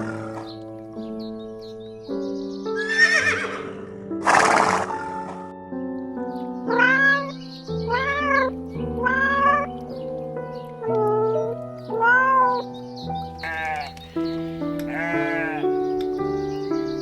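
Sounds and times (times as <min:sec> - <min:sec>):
wavering animal cry: 0:00.0 - 0:00.6, 0:02.8 - 0:03.8, 0:06.7 - 0:09.8, 0:10.8 - 0:12.7, 0:13.4 - 0:14.0, 0:14.9 - 0:15.7
background music: 0:00.0 - 0:17.0
cat meowing: 0:06.7 - 0:09.8, 0:10.9 - 0:12.7, 0:13.4 - 0:14.0, 0:14.9 - 0:15.7.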